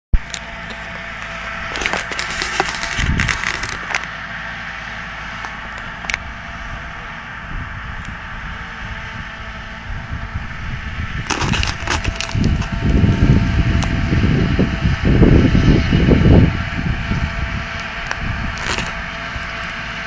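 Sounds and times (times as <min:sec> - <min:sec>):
harvesting machinery engine drone: 0:00.1 - 0:20.0
uneven low rumbling: 0:00.2 - 0:20.0
clattering: 0:11.3 - 0:12.8.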